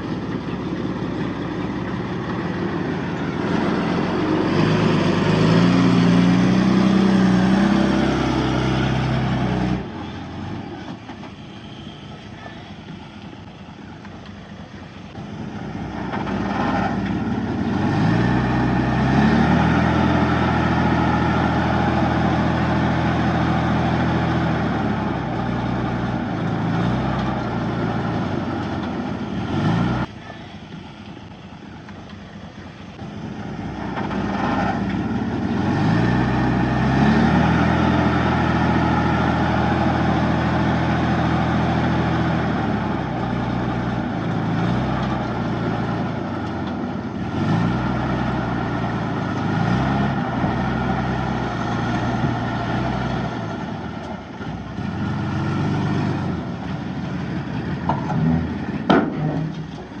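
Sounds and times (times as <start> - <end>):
bulldozer diesel engine revving: 0.0 - 60.0.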